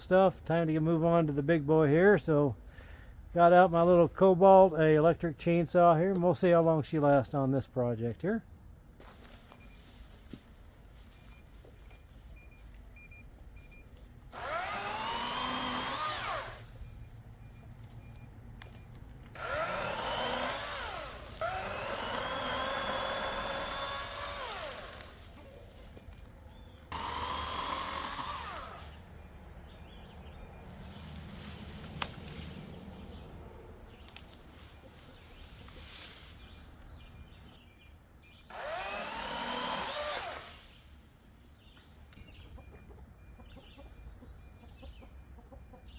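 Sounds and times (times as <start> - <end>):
electric chainsaw cutting logs: 14.3 - 17.0, 18.7 - 26.0, 26.9 - 29.2, 38.5 - 40.8.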